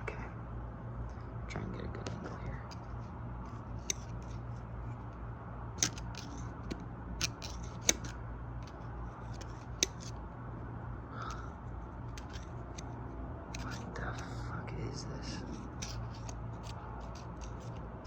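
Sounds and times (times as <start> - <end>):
steady low hum: 0.0 - 18.0
metal tool clicking and tapping: 5.8 - 8.1.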